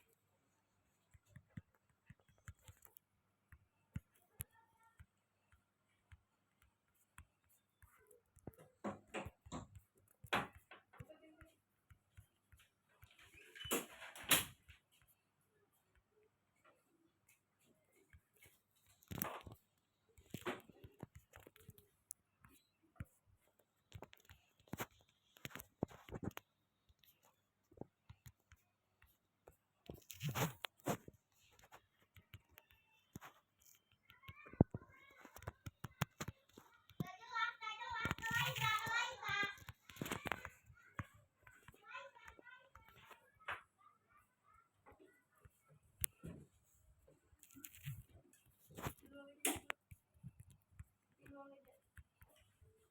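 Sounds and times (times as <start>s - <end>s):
faint clicks and taps: 0.0s - 52.9s.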